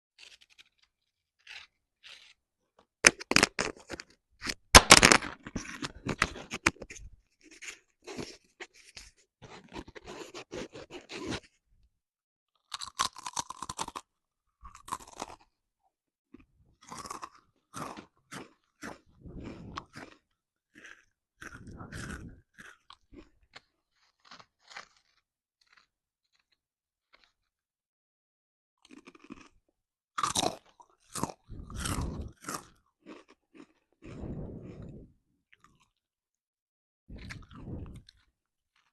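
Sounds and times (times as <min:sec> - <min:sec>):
crunching crunchy food: 0:00.2 - 0:11.6, 0:12.5 - 0:15.6, 0:16.3 - 0:27.6, 0:28.8 - 0:36.1, 0:37.1 - 0:38.9
chewing: 0:16.4 - 0:27.5, 0:30.2 - 0:36.0, 0:37.1 - 0:38.9.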